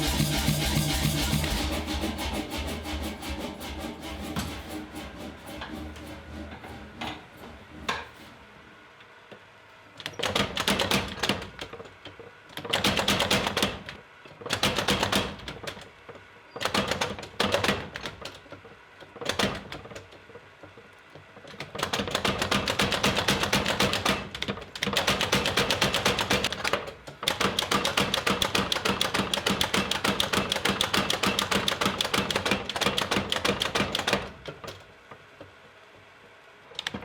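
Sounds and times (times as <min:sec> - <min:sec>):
power hammer striking metal: 0:00.0 - 0:07.2.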